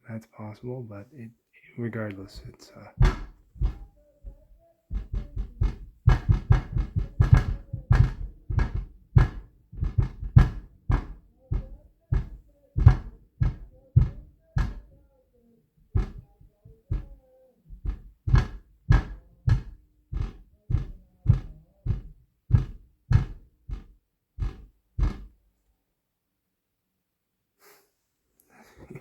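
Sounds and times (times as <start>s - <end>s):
footsteps stomping through wall: 3.0s - 15.0s, 15.9s - 25.4s.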